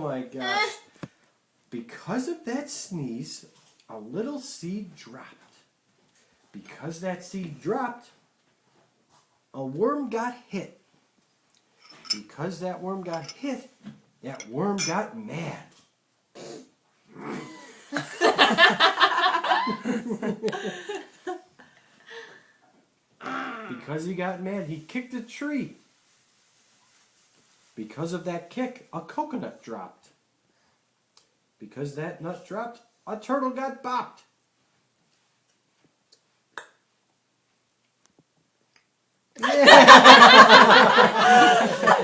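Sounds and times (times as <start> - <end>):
person laughing: 17.3 - 21.4, 39.4 - 42.0.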